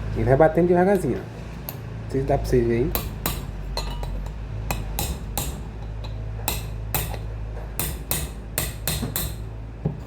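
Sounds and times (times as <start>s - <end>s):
hammer tapping metal: 2.9s - 10.0s.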